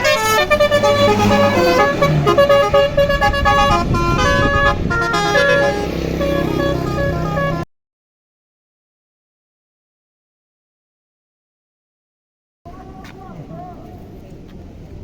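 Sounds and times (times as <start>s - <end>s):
bus engine drone: 0.0s - 7.7s
musical air horn melody: 0.0s - 7.7s.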